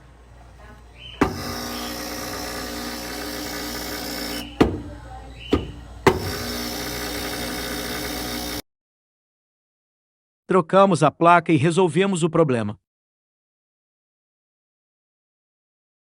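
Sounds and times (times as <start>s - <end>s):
loud electrical buzz: 1.1s - 8.6s.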